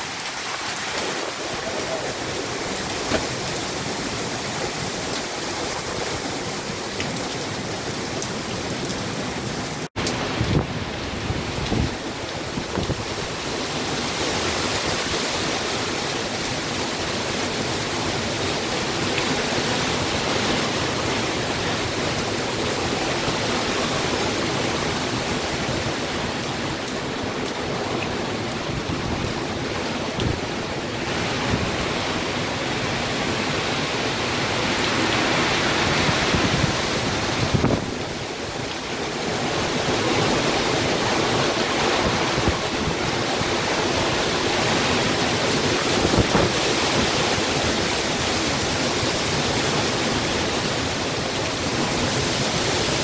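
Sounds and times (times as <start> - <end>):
hurricane wind and rain: 0.0 - 53.0
wind thumping microphone: 35.2 - 38.5, 41.0 - 43.8, 44.9 - 47.9.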